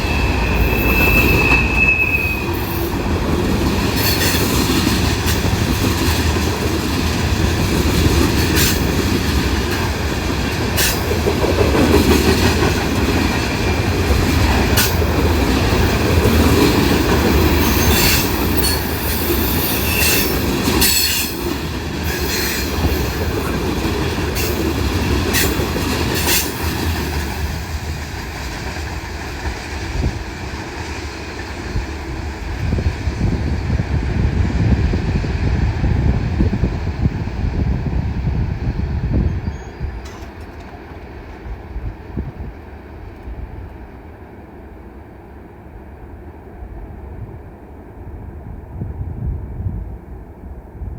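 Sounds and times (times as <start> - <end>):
wheel squeals: 0.0 - 3.0, 17.4 - 21.5.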